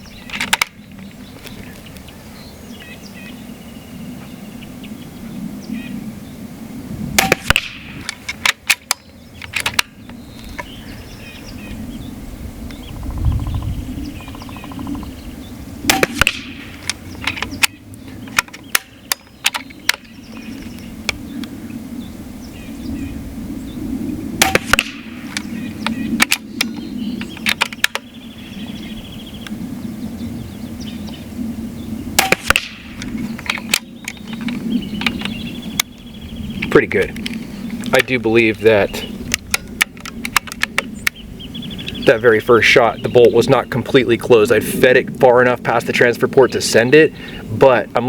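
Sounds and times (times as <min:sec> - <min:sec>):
air pistol shots: 0:07.2 - 0:08.9, 0:15.9 - 0:17.0, 0:24.4 - 0:25.5, 0:32.2 - 0:33.8.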